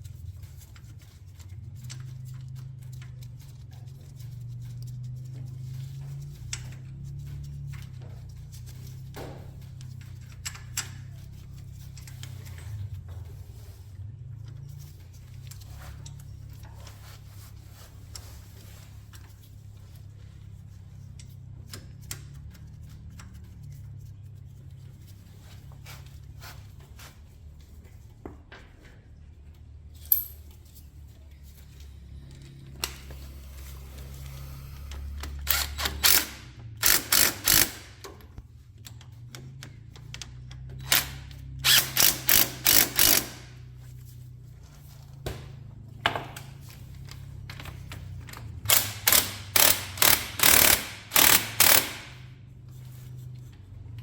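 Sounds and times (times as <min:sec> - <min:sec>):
ratchet wrench clicking: 0:34.9 - 0:38.2, 0:40.8 - 0:43.6, 0:48.4 - 0:52.3.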